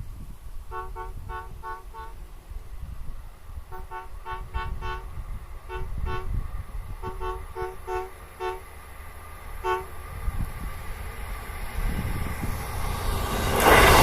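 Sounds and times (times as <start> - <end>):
low rumble of train: 0.0 - 14.0
train horn toots: 0.7 - 2.3, 3.7 - 8.8, 9.6 - 10.0.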